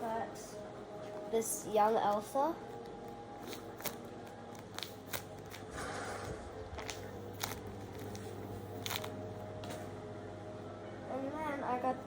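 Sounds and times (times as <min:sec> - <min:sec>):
paper squishy crinkling: 0:03.1 - 0:09.2
soft paper rustle: 0:03.4 - 0:09.9.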